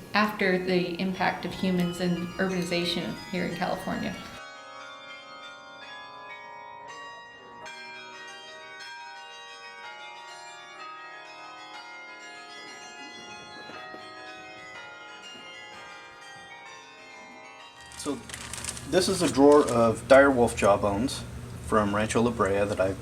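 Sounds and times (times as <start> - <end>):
bells ringing: 0.6 - 23.0.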